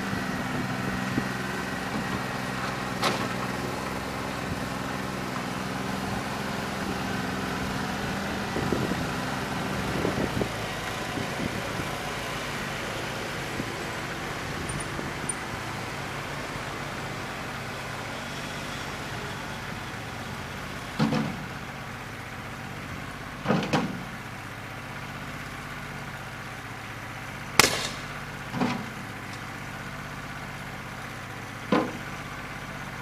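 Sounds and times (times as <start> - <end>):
diesel engine misfiring: 0.0 - 33.0
sharp metal clanks: 27.6 - 28.1.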